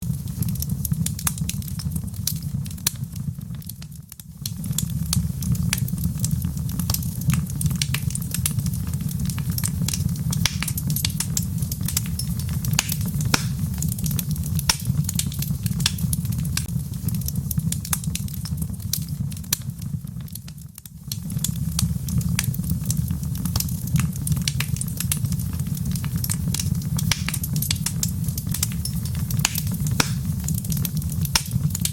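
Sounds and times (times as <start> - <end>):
wood fire crackling and popping: 0.0 - 31.9.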